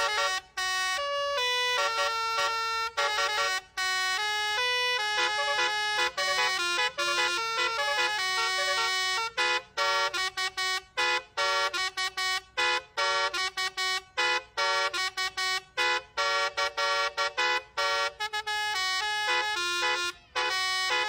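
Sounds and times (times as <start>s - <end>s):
bus horn playing melody: 0.0s - 21.0s.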